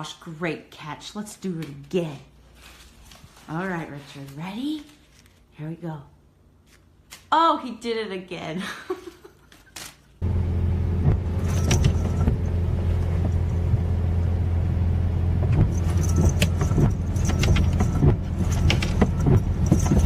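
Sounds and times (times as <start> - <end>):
low mechanical drone: 10.2 - 20.0
metallic jingling: 11.4 - 12.7, 15.7 - 20.0.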